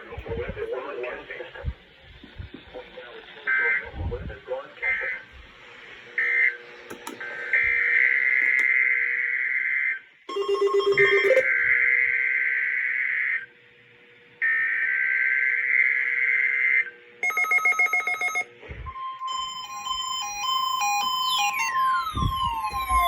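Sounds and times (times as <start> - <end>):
beeping electronic tones: 10.3 - 11.7, 17.2 - 23.0.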